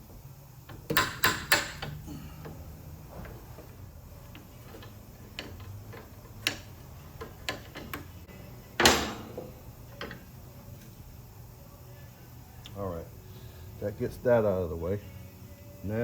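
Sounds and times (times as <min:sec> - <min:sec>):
hand tools tapping on metal: 0:00.7 - 0:10.9.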